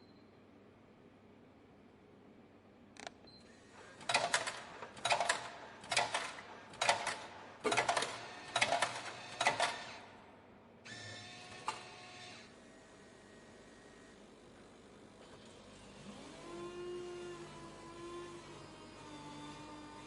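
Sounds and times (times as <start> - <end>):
faint hum: 0.0 - 3.8.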